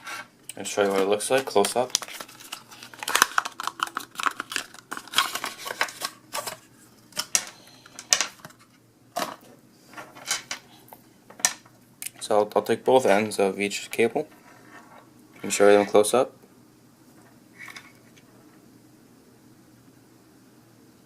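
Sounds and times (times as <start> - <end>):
packaging rustling: 0.8 - 9.4.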